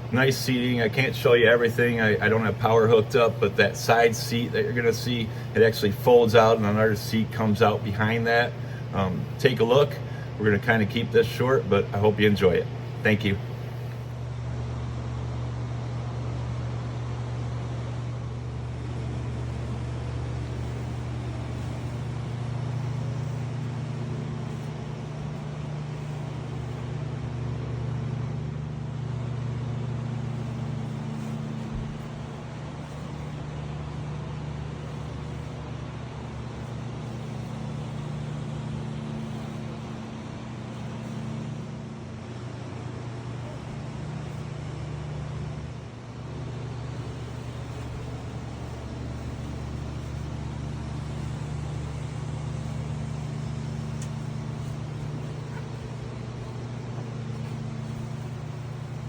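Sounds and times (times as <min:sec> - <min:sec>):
low machine hum: 0:00.0 - 0:59.0
held low tones: 0:12.7 - 0:59.0.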